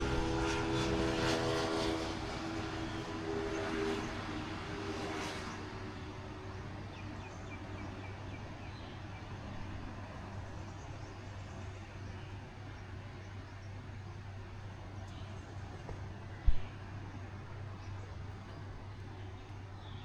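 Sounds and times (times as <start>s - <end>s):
motor vehicle passing: 0.0s - 7.0s.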